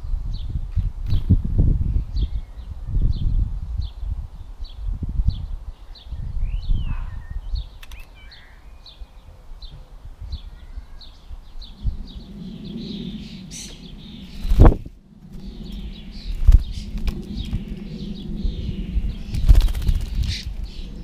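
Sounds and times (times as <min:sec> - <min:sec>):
low wind rumble: 0:00.0 - 0:21.0
small birds chirping: 0:00.0 - 0:21.0.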